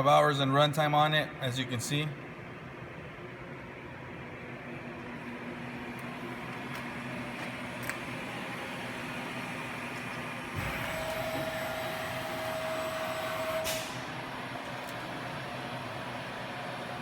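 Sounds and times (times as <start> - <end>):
grinder machine humming: 5.2 - 17.0
machine whine with hiss: 8.6 - 17.0.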